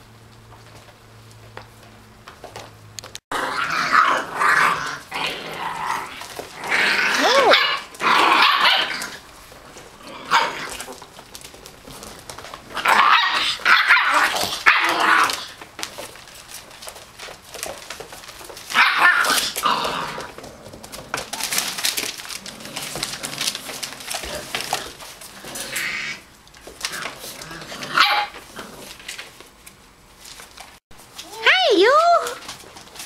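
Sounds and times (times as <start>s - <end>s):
puppies barking and yipping: 6.0s - 11.5s, 18.5s - 20.4s, 27.8s - 29.0s.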